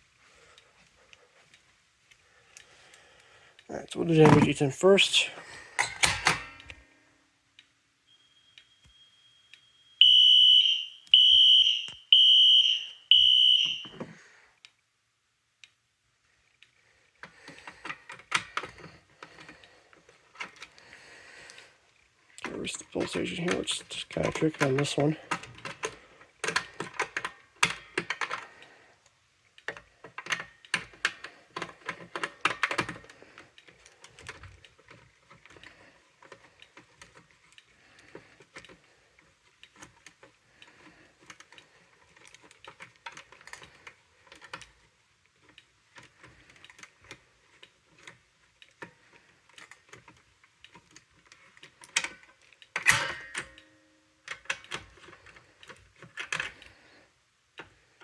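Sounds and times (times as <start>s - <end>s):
fire alarm pull station clicking: 5.8s - 6.9s, 8.1s - 14.2s, 23.0s - 28.4s, 49.6s - 56.5s.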